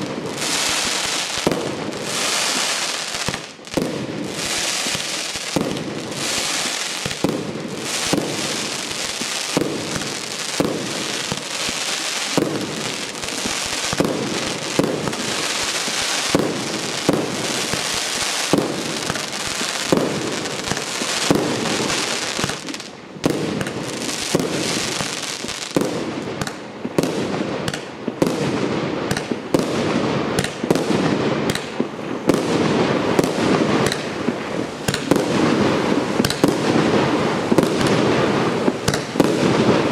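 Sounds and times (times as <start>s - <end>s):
fireworks crackling: 0.0s - 39.9s
fireworks shots: 0.0s - 39.9s.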